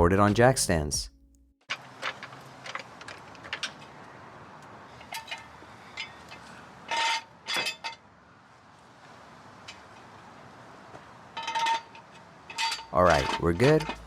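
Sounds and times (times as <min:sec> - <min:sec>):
loud metallic clanks: 0:11.3 - 0:14.0.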